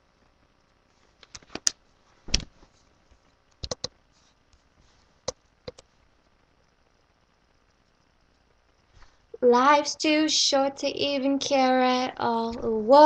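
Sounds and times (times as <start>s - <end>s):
sharp clicks and taps: 3.5s - 4.0s, 5.3s - 5.9s.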